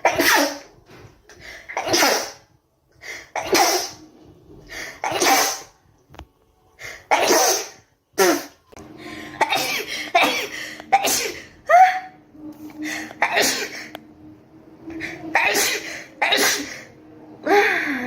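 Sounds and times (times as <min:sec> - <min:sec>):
rapid sneezing: 0:00.0 - 0:00.8, 0:01.5 - 0:04.0, 0:04.7 - 0:05.8, 0:06.9 - 0:08.6, 0:09.4 - 0:12.0, 0:13.2 - 0:13.9, 0:15.3 - 0:17.0.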